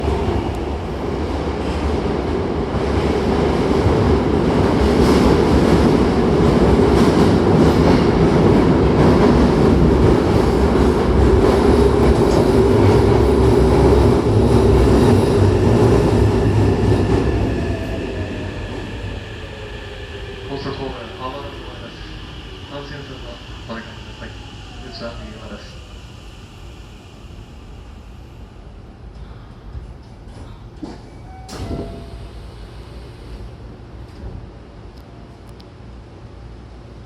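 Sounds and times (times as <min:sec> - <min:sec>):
electric train rumbling on rails: 0:00.0 - 0:37.0.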